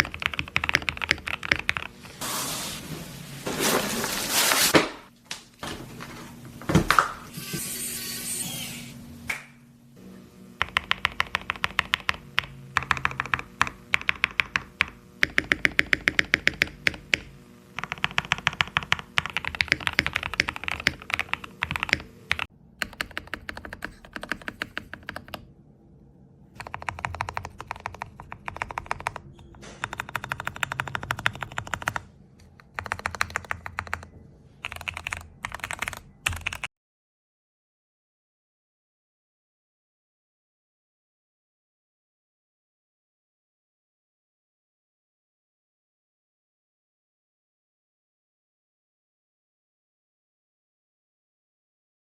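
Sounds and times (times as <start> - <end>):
mechanical keyboard typing: 0.0 - 2.0, 10.6 - 25.5, 26.6 - 36.7.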